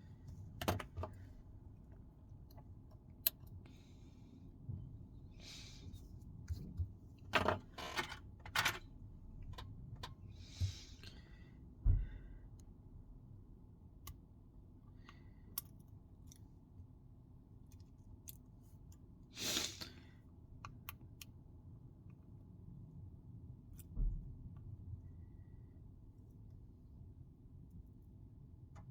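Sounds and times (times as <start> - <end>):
small clicks and taps of tools: 14.9 - 16.5.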